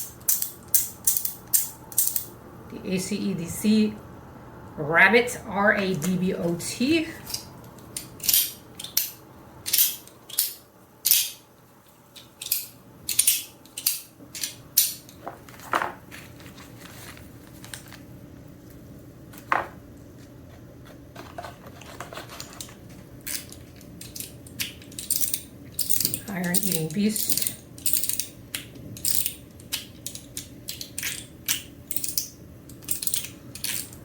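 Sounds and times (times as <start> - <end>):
fidget toy clicking and snapping: 12.2 - 15.0, 23.3 - 34.0.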